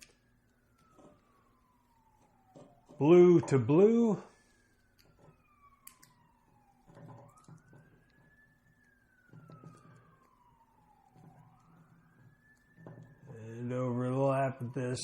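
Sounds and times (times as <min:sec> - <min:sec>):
distant wailing siren: 0:00.0 - 0:15.0.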